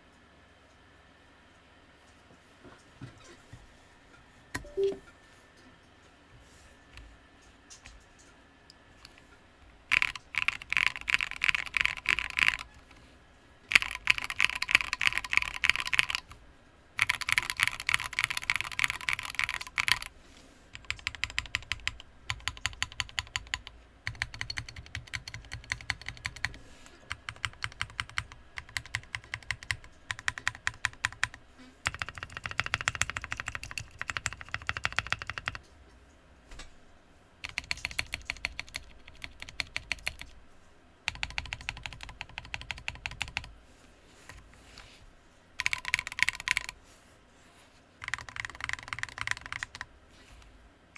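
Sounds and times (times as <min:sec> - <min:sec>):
mechanical keyboard typing: 0:04.6 - 0:05.0, 0:09.8 - 0:12.9, 0:13.7 - 0:16.4, 0:17.0 - 0:20.1, 0:20.8 - 0:35.6, 0:37.4 - 0:40.4, 0:41.1 - 0:43.5, 0:45.6 - 0:46.8, 0:48.0 - 0:49.9.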